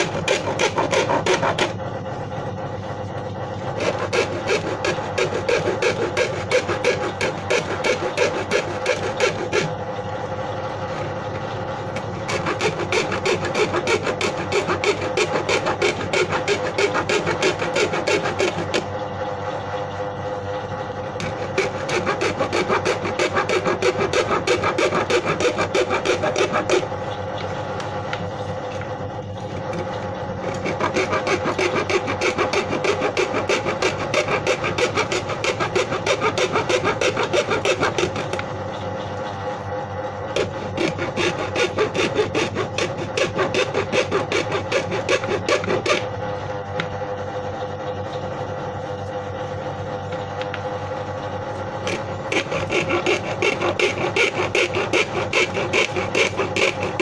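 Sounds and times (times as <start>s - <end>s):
hand tool rasping plastic: 0.0s - 1.8s, 3.8s - 9.8s, 12.0s - 18.9s, 21.2s - 26.9s, 29.6s - 38.4s, 40.4s - 46.1s, 51.8s - 57.0s
steady hum: 0.0s - 57.0s.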